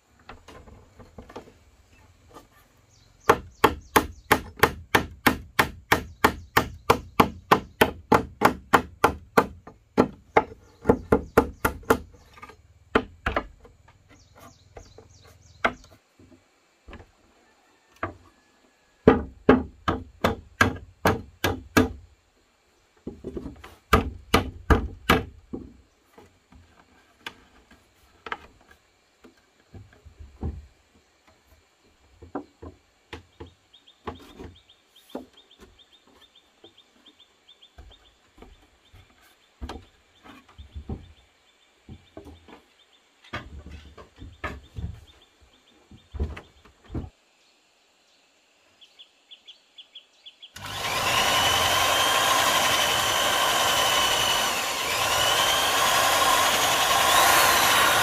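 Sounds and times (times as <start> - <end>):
chopping wood: 3.3 - 12.1, 23.9 - 25.4.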